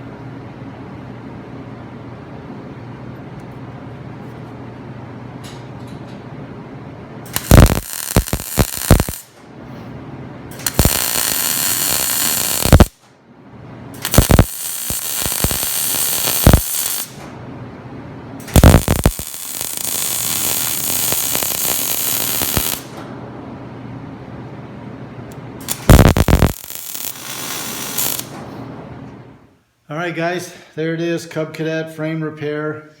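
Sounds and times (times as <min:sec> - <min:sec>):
welder arc crackling and hissing: 0:07.3 - 0:09.4, 0:10.5 - 0:13.1, 0:14.0 - 0:17.3, 0:18.4 - 0:23.0, 0:25.6 - 0:28.4.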